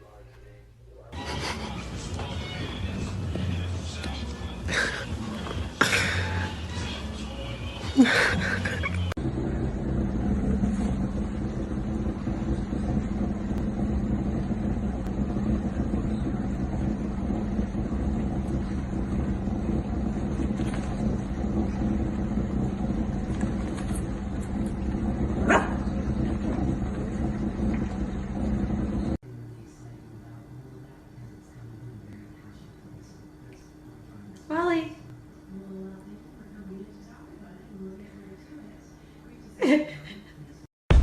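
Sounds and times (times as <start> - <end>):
vehicle engine droning: 1.2 - 29.2.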